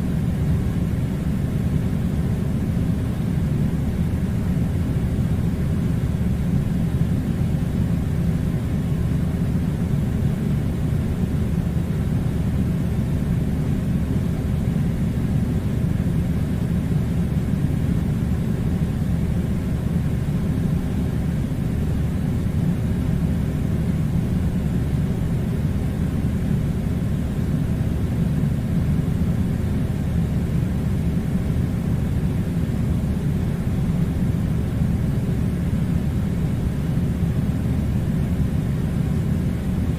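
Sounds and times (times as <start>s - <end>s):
air conditioner running: 0.0s - 39.9s.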